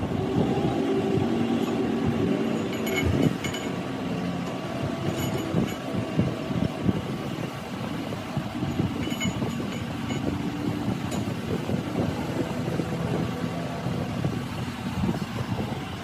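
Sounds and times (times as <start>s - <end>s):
machinery rumbling and crackling: 0.0s - 16.0s
light metallic clinks: 2.4s - 5.9s, 8.6s - 10.4s, 11.0s - 11.4s.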